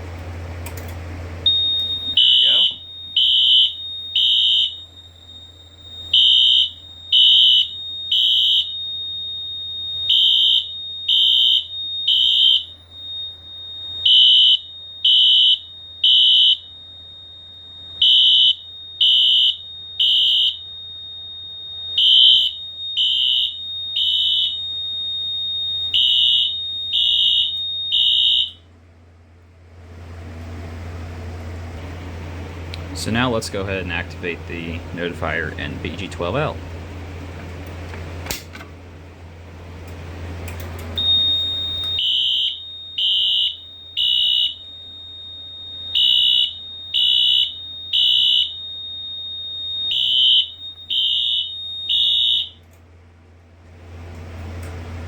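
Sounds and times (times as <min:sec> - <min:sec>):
fire alarm horn beeps: 0:01.4 - 0:28.8, 0:40.3 - 0:52.8.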